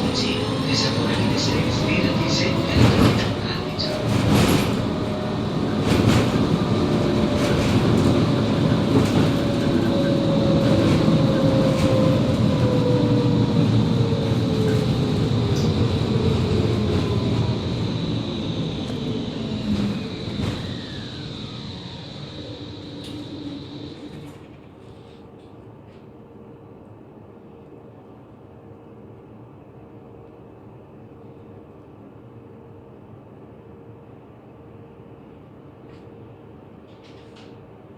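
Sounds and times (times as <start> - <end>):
wheel-on-rail rumble: 0.0 - 24.6.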